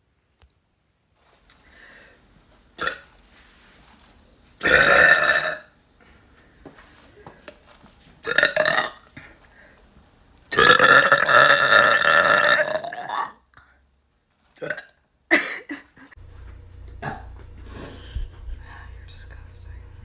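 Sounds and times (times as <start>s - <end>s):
girls burping: 16.9s - 17.4s.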